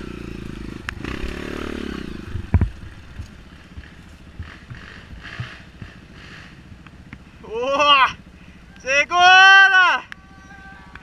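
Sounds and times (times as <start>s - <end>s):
dirt bike engine revving: 0.0s - 8.2s.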